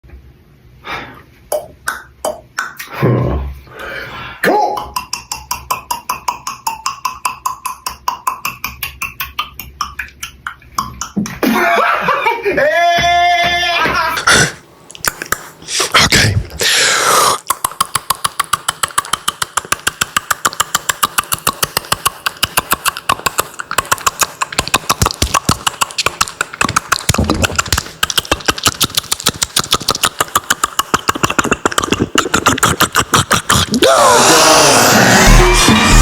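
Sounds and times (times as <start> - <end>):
beatboxing clicks and pops: 1.5 - 3.0, 4.6 - 11.4, 14.2 - 33.9, 34.9 - 36.0
music: 35.0 - 36.0.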